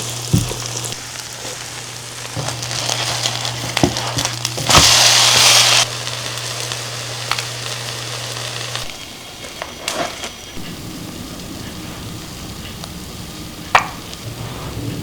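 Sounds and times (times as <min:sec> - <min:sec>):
food sizzling in a frying pan: 0:00.0 - 0:15.0
low steady hum: 0:10.4 - 0:15.0.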